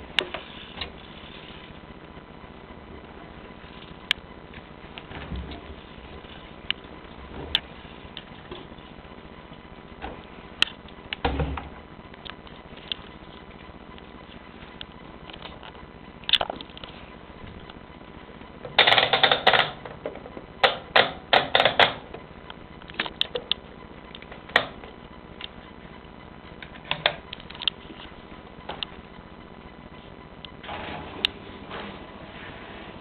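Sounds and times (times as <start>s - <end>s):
washing machine spinning: 3.0s - 11.8s, 30.6s - 33.0s.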